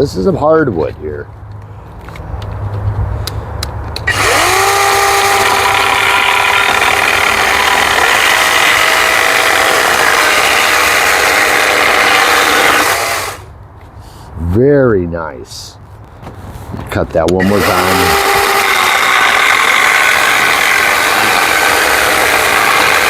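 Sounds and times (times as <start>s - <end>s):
chainsaw cutting log: 4.1s - 13.5s, 17.3s - 23.0s.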